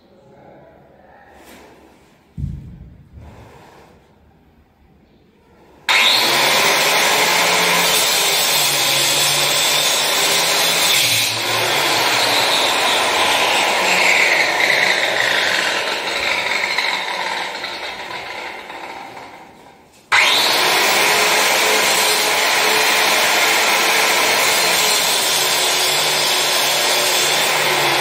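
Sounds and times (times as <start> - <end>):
electric power tool cutting: 5.9 - 19.4, 20.1 - 28.0.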